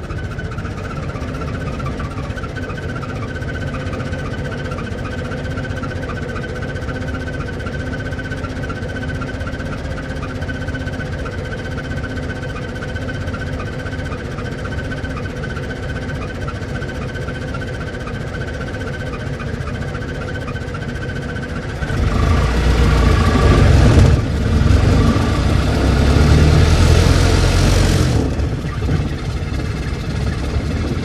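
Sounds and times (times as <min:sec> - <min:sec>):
car engine running: 0:00.0 - 0:31.0.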